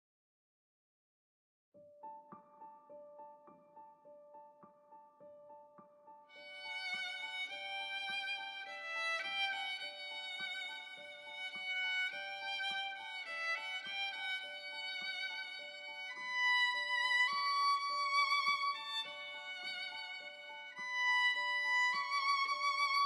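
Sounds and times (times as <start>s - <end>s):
violin playing slow melody: 6.3s - 23.0s.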